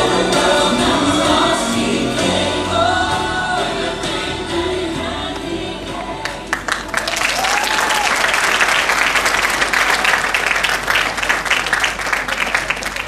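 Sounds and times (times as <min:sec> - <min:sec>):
audience applauding: 0:06.2 - 0:13.0.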